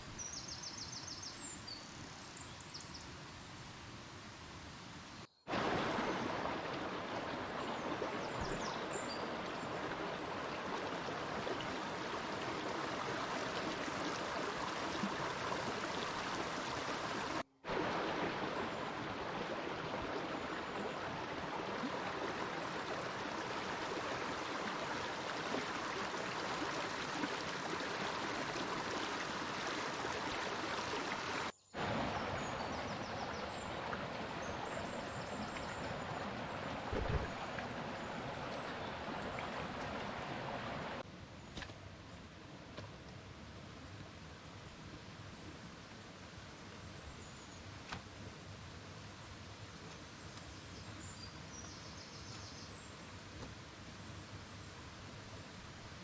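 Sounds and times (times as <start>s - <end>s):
flowing stream rushing: 5.5s - 41.0s.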